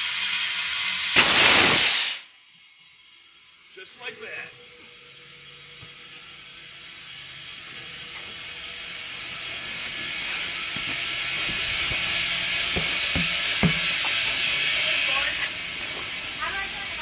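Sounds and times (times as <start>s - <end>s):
compressed air hissing into tire: 1.2s - 2.2s
sharp clicks: 1.2s - 2.2s.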